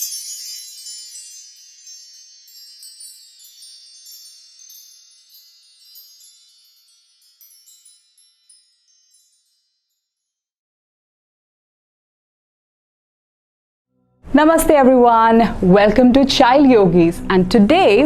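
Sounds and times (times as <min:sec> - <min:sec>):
chimes ringing: 0:00.0 - 0:10.5.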